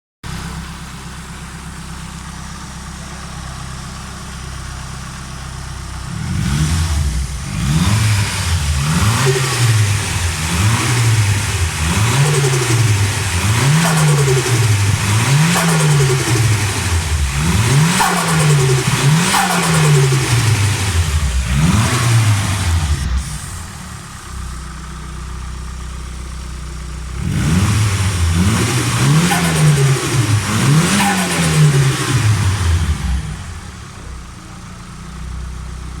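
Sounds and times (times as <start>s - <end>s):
car engine idling: 0.2s - 36.0s
car engine revving: 5.9s - 24.6s, 27.0s - 34.6s.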